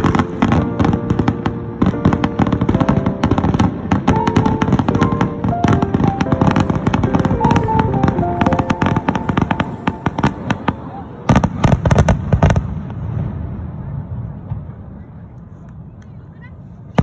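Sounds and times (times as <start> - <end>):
music with held notes: 0.0 - 10.8
fireworks crackling: 0.0 - 13.6.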